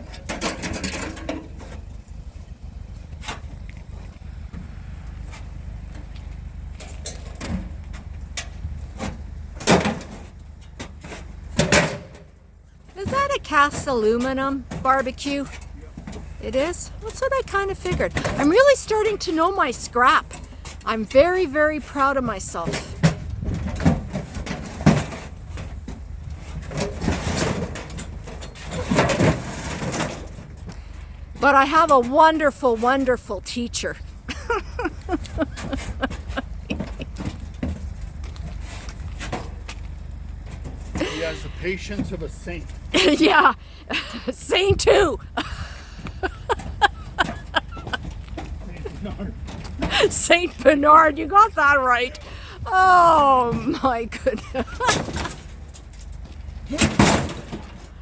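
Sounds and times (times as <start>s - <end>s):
knocks and clunks: 0.0s - 58.0s
vehicle engine hum: 0.0s - 58.0s
loud metal clanks: 54.4s - 58.0s.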